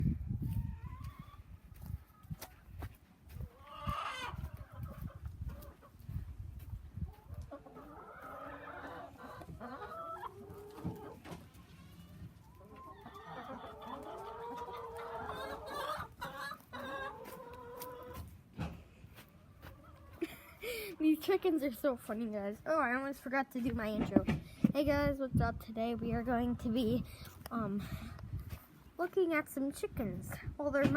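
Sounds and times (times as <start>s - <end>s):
hens clucking: 0.4s - 21.3s.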